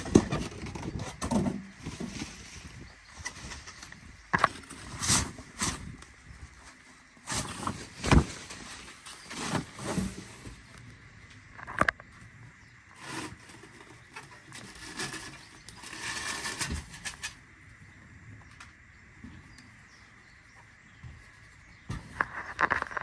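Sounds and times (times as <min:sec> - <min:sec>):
packaging rustling: 0:07.3 - 0:10.7.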